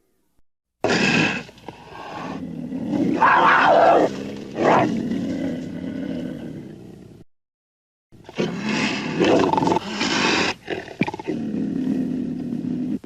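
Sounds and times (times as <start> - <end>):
cougar calling: 1.7 - 5.3.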